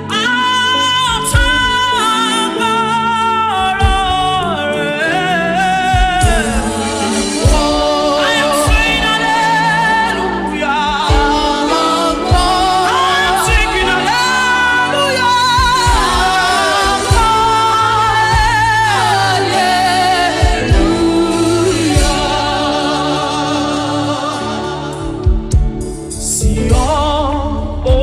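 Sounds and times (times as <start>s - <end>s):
person singing with vibrato: 0.0s - 28.0s
drum beats: 1.3s - 2.0s, 3.8s - 4.5s, 5.8s - 28.0s
sustained bass notes: 2.9s - 28.0s.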